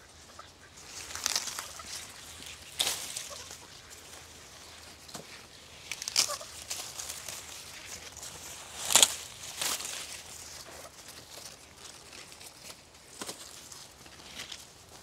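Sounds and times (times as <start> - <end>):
dry corn stalks rustling: 0.0 - 15.0
sharp crackles: 0.9 - 3.7, 5.8 - 10.2.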